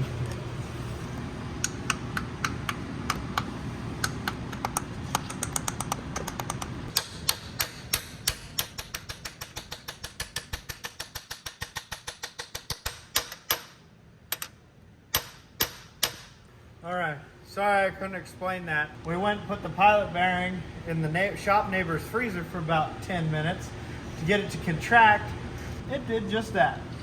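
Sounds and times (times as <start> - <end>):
low steady hum: 0.0 - 10.8, 12.9 - 27.0
hammer tapping metal: 1.6 - 14.5.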